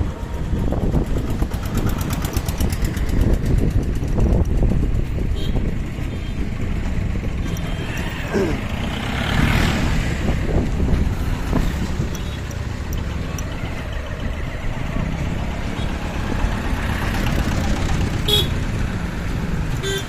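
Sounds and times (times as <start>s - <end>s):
traffic rumble: 0.0s - 20.0s
car horn beep: 18.3s - 18.5s, 19.8s - 20.0s.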